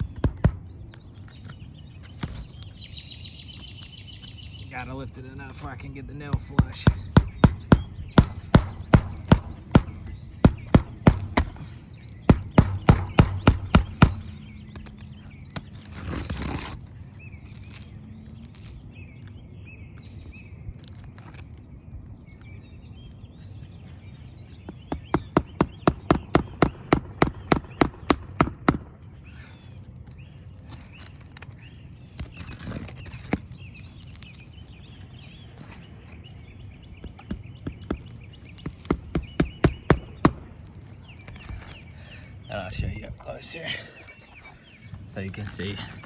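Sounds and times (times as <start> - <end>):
hammer driving nails into shingles: 0.0 - 0.7, 6.3 - 14.6, 24.9 - 29.5.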